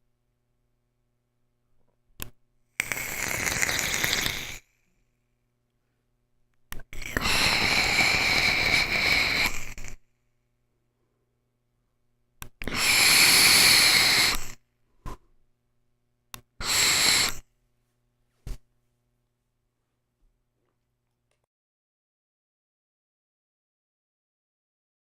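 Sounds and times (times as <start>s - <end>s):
breathy vaping puffs: 2.8s - 4.8s, 6.8s - 10.0s, 12.6s - 15.2s, 16.5s - 17.4s.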